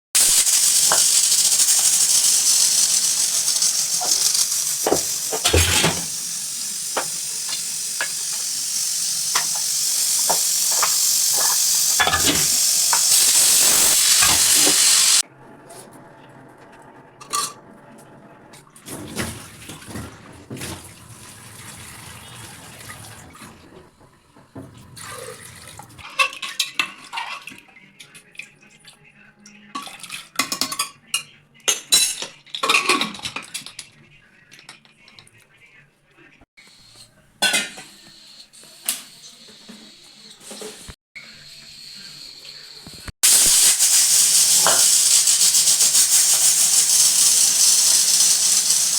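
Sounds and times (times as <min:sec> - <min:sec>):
pots and utensils clinking: 0:00.2 - 0:15.2, 0:31.7 - 0:33.8, 0:37.4 - 0:37.9, 0:43.2 - 0:48.9
pressure cooker whistle hissing: 0:00.2 - 0:15.2, 0:43.2 - 0:48.9.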